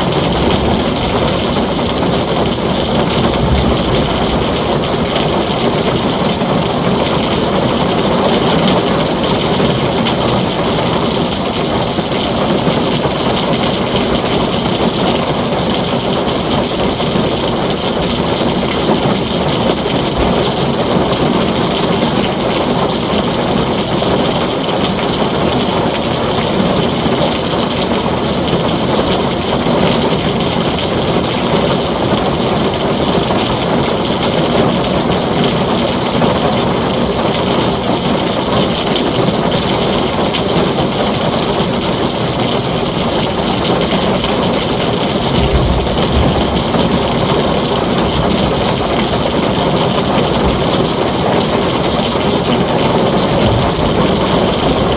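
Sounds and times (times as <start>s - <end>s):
heavy rain on a tin roof: 0.0s - 54.9s
short low rumble: 0.2s - 5.6s, 45.3s - 49.2s.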